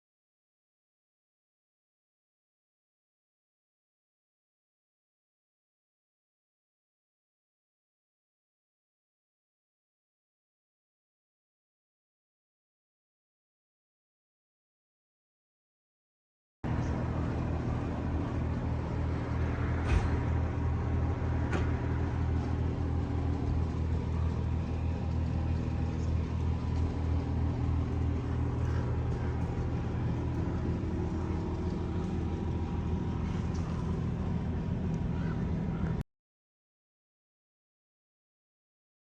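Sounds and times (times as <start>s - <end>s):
low mechanical rumble: 16.6s - 36.0s.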